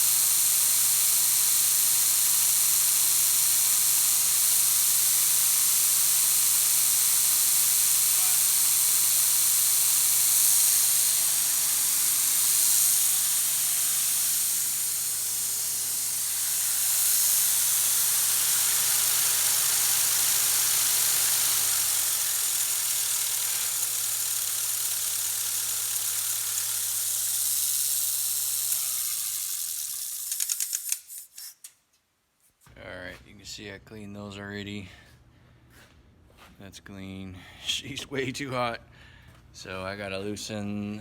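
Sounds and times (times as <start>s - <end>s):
welder engine humming: 0.0s - 31.0s.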